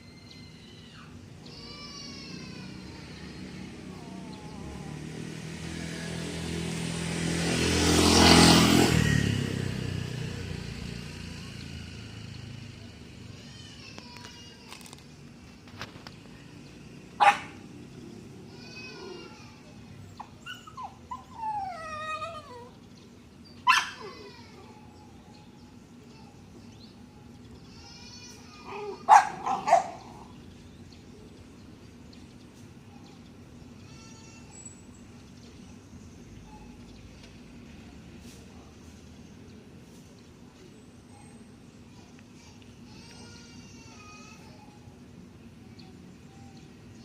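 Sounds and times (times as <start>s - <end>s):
dog barking: 17.2s - 17.6s, 23.7s - 24.1s, 28.8s - 30.2s
dog whining and whimpering: 20.2s - 22.8s.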